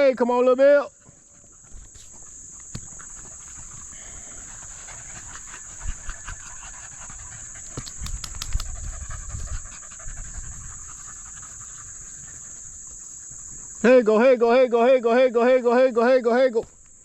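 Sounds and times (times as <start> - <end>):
dog panting: 1.0 - 13.8.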